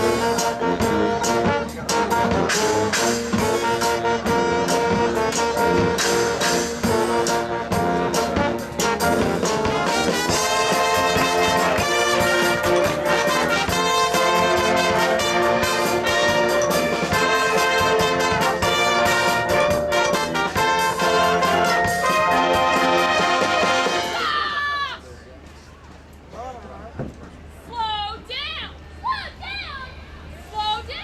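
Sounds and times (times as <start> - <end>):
marching band brass chords: 0.0 - 24.5
drum hits: 1.7 - 24.2.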